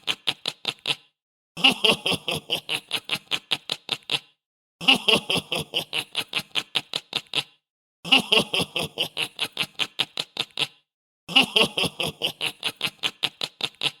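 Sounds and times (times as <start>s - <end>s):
sinister laughing: 8.1s - 14.0s.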